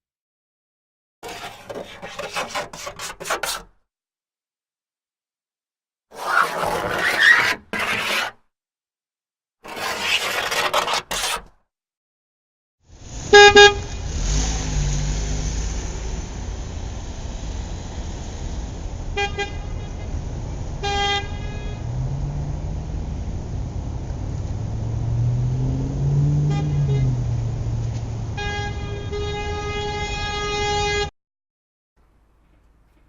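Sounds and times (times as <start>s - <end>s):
passing vehicle engine: 12.9s - 30.3s
traffic rumble: 13.0s - 30.4s
car horn honking: 13.3s - 14.0s, 19.2s - 20.0s, 20.8s - 21.9s, 26.4s - 27.3s, 28.4s - 31.1s.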